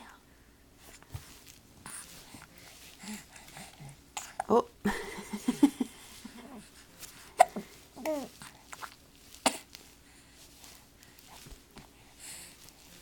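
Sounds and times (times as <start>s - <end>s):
infant hiccuping: 7.4s - 8.3s.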